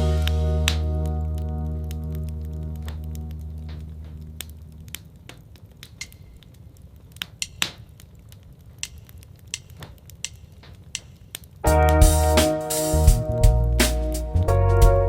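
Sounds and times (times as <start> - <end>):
low musical chord: 0.0 - 5.0, 11.7 - 15.0
fire popping: 0.0 - 15.0
wood fire crackling: 0.0 - 15.0.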